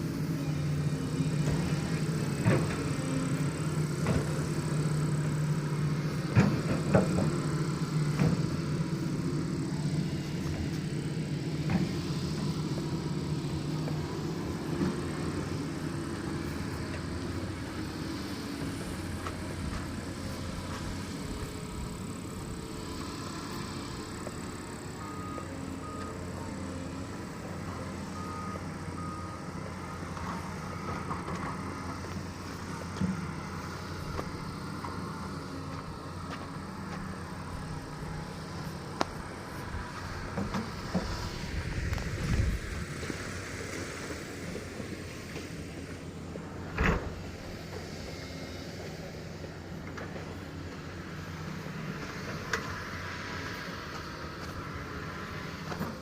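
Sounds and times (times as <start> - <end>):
diesel engine of earthmover running: 0.0 - 56.0
thump: 46.8 - 47.2.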